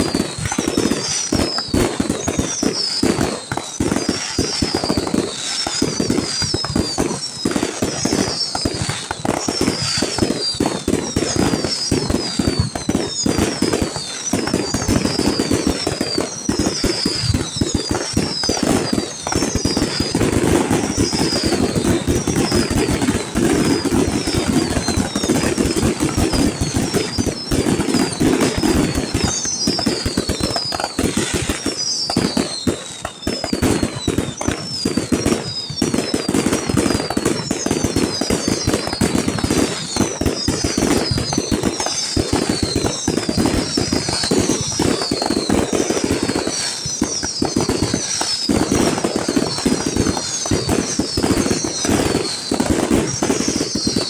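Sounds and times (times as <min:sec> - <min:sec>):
falling firework whistles: 0:00.0 - 0:54.0
fireworks bangs and crackles: 0:00.0 - 0:54.0.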